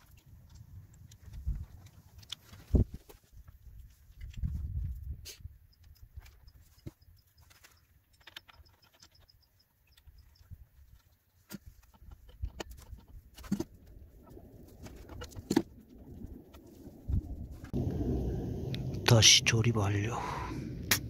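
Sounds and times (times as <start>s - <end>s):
parts clicking and knocking: 5.6s - 13.8s.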